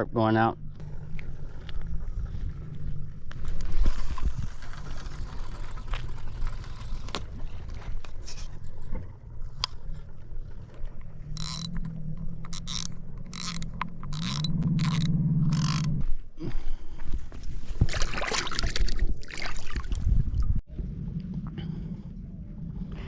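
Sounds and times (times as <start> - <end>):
low steady hum: 0.0 - 23.0
fishing reel winding: 11.4 - 15.9.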